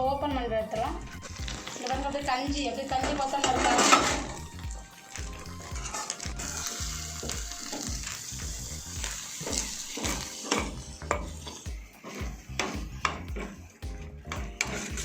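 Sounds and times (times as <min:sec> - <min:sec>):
spoon scraping through rice gruel: 0:01.0 - 0:12.3.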